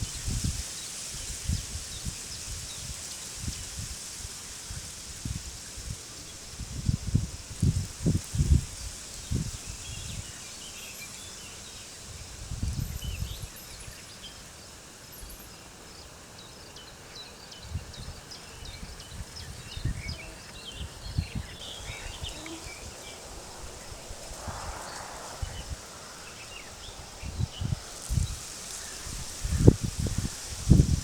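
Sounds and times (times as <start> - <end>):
steady wind: 0.0 - 31.0
small birds chirping: 7.6 - 31.0
low rumbling gusts: 20.8 - 31.0.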